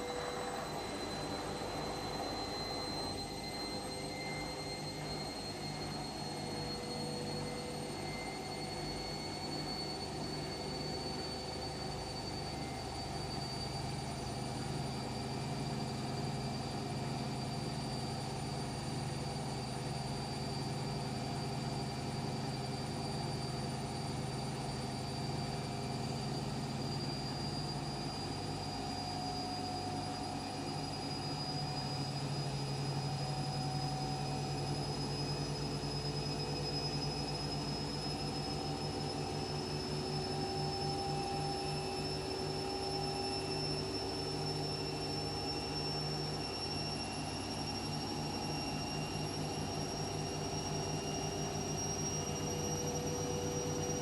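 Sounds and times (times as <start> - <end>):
washing machine running: 0.0 - 6.0.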